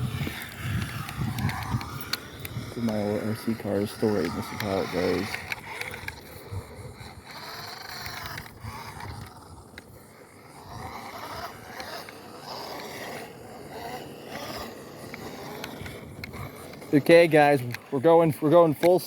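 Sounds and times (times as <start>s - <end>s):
toy car electric motor whining: 0.0s - 19.0s.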